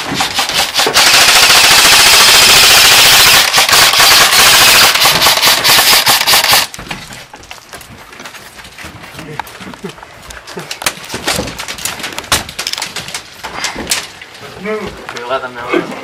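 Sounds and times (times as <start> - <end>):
airsoft rifle firing: 0.4 - 6.7.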